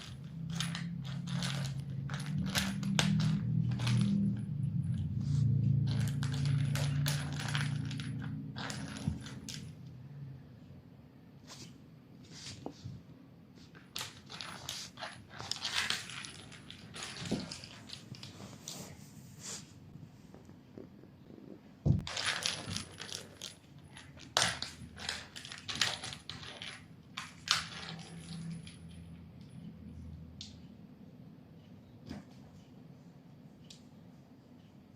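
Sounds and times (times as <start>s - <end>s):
small object clattering and scraping: 0.0s - 9.8s, 13.7s - 18.9s, 21.9s - 29.0s
low steady hum: 0.0s - 34.9s
metallic jingling and rattling: 5.7s - 9.8s, 22.0s - 29.5s.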